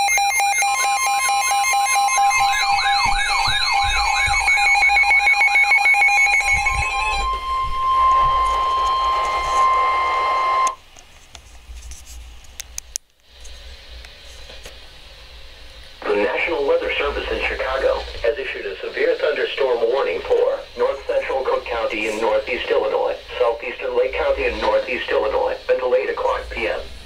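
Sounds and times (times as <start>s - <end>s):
electronic beeping: 0.0s - 10.8s
steady warning tone: 0.0s - 10.8s, 15.5s - 27.0s
warbling siren-like alarm: 0.0s - 10.8s.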